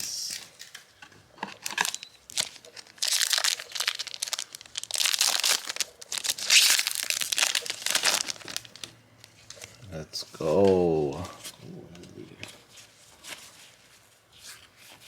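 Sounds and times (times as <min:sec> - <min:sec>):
wrapper crinkling and tearing: 0:01.6 - 0:09.8.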